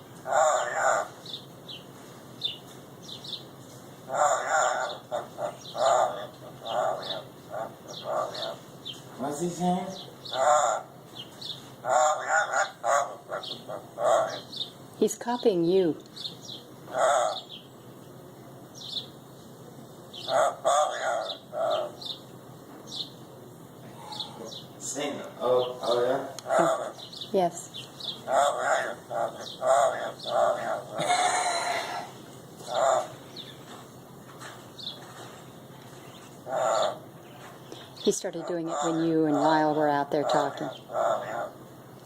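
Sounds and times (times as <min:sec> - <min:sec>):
parrot chirping: 0:00.2 - 0:01.8, 0:04.1 - 0:09.0, 0:09.9 - 0:14.8, 0:16.2 - 0:17.6, 0:20.2 - 0:22.2, 0:25.4 - 0:33.6, 0:36.2 - 0:41.6
parrot speech-like chatter: 0:00.3 - 0:01.2, 0:04.1 - 0:08.6, 0:09.3 - 0:10.9, 0:11.8 - 0:14.4, 0:25.4 - 0:27.6, 0:28.3 - 0:33.2, 0:38.1 - 0:41.6
parrot squawking speech-like: 0:26.4 - 0:27.0, 0:38.3 - 0:41.5.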